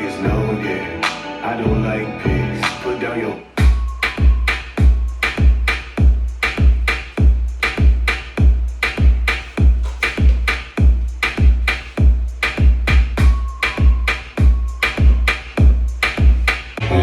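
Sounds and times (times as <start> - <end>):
hip hop beat over speaker: 0.0 - 17.0
sliding deep bass notes: 1.6 - 2.8, 16.8 - 17.0.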